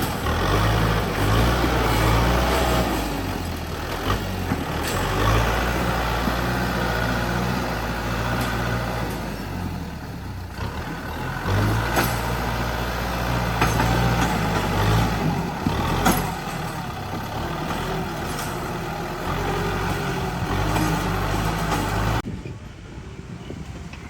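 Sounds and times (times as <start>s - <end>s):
diesel engine running: 0.0s - 22.4s
sharp metal clanks and knocks: 11.6s - 19.0s, 19.8s - 22.2s.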